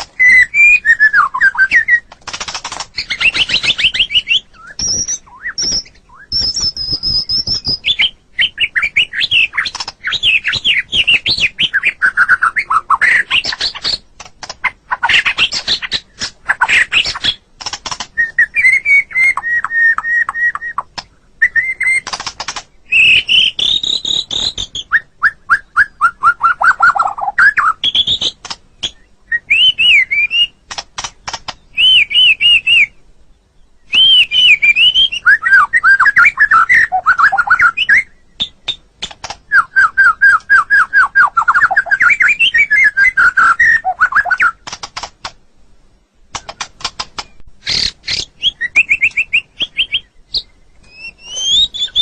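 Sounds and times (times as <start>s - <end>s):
bird singing varied song: 0.0s - 45.2s, 46.3s - 52.0s.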